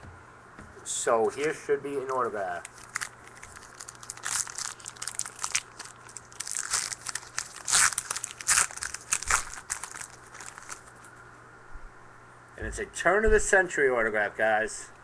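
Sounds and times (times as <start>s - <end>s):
wrapper torn and crinkled: 2.6s - 11.1s.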